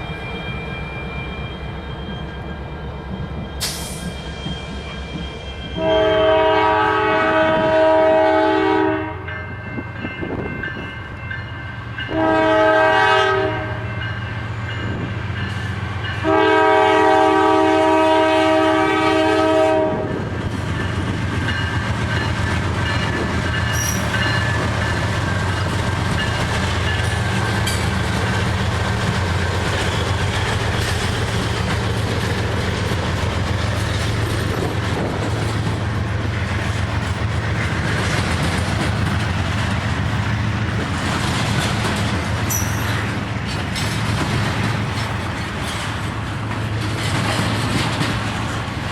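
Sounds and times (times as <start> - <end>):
train engine rumble: 0.0 - 48.9
locomotive air horn blasts: 5.8 - 9.3, 12.1 - 13.9, 16.2 - 20.2
wheels clicking over rail joints: 40.7 - 48.9.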